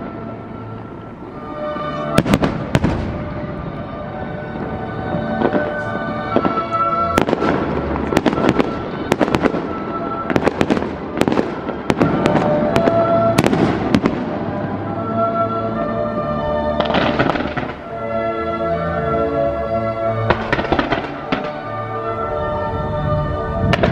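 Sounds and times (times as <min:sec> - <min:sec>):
music with sustained notes: 0:00.0 - 0:23.9
fireworks bangs and cracks: 0:01.1 - 0:15.2, 0:16.8 - 0:17.9, 0:20.2 - 0:21.8, 0:23.6 - 0:23.9.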